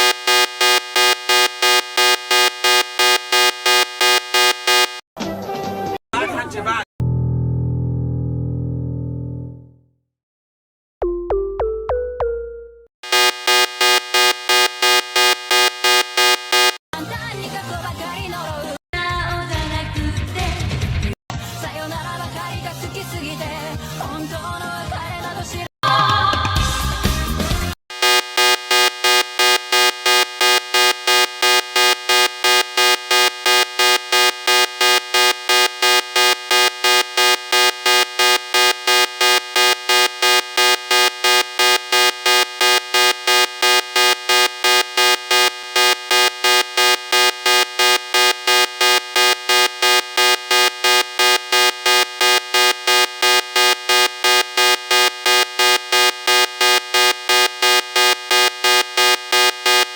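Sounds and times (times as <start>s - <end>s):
buzzy alarm beeping: 0.0s - 5.0s, 13.0s - 16.8s, 27.9s - 59.9s.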